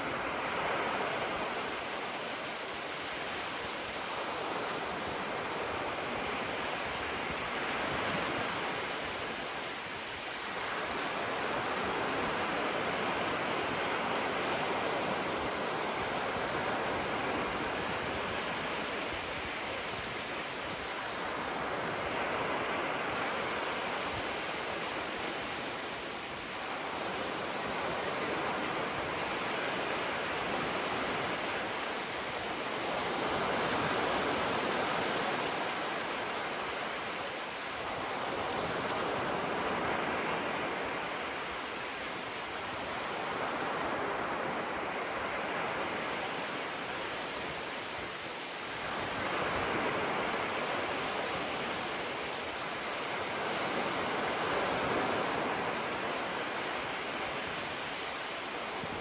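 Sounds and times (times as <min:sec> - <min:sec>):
small waves breaking on shore: 0:00.0 - 0:59.0.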